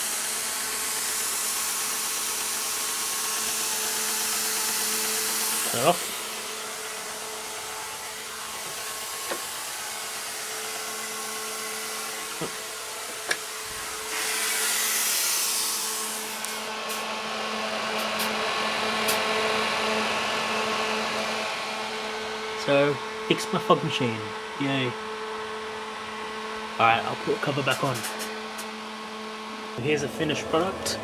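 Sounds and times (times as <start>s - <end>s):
fog machine hiss: 0.0s - 19.4s, 27.4s - 28.8s
fog machine fan whirring: 0.0s - 31.0s.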